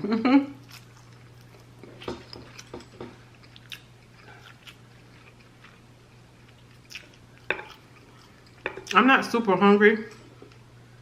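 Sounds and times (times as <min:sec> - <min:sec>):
person chewing: 0:00.6 - 0:09.0.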